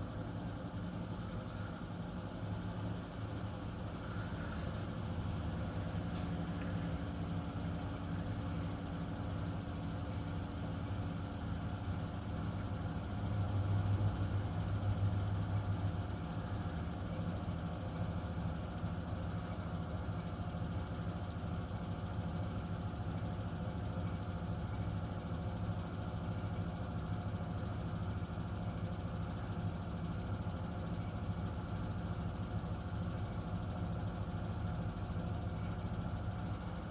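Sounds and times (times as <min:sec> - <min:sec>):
washing machine spinning hum: 0:00.0 - 0:36.9.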